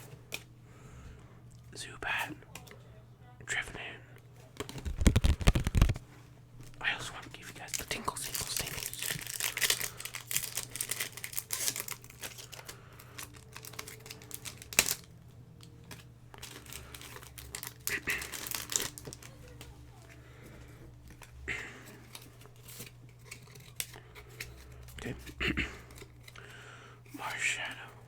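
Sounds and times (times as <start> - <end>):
foil wrapper crinkling: 4.6 - 6.0, 7.4 - 20.4, 21.0 - 25.0.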